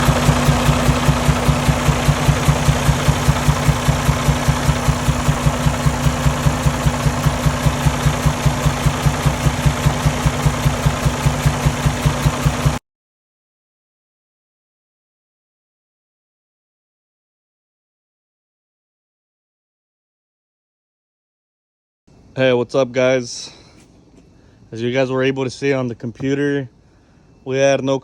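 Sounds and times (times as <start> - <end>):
diesel engine idling: 0.0 - 12.8.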